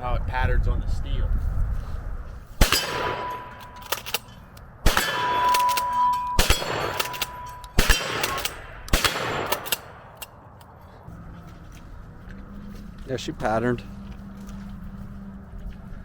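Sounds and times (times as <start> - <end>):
shotgun blasts: 2.6 - 3.7, 4.8 - 10.2
steel target ringing clang: 2.6 - 3.8, 4.9 - 9.6.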